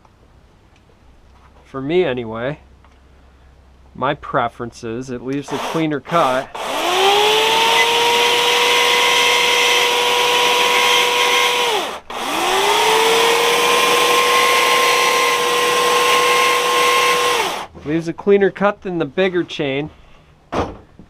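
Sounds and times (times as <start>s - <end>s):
small chainsaw high whine: 5.5s - 17.7s.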